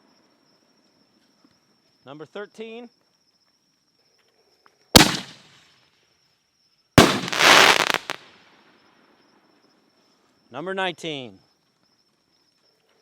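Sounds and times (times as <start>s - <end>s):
firework crackling: 5.0s - 5.6s, 7.0s - 8.3s
firework launch bang: 5.0s - 5.6s, 7.0s - 8.3s
firework shell bursting: 5.0s - 5.6s, 7.0s - 8.3s.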